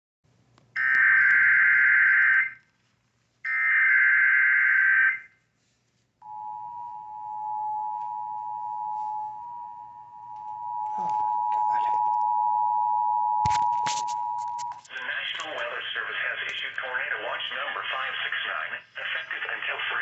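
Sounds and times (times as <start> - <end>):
two-tone attention signal: 6.2 - 14.8.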